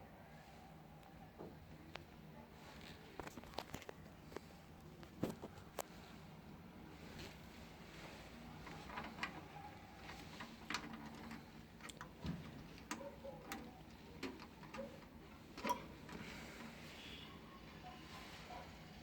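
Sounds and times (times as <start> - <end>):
small plastic parts clicking: 10.0 - 16.7.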